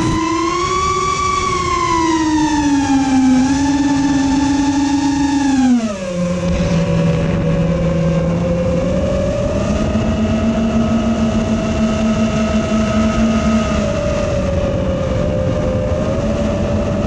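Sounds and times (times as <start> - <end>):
rush of air noise: 0.0 - 11.7
quadcopter motors whining: 0.0 - 17.0.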